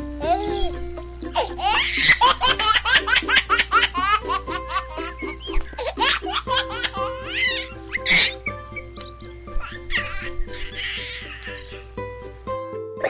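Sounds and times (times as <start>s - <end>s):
background music: 0.0s - 13.0s
high-pitched giggling laughter: 0.2s - 8.8s.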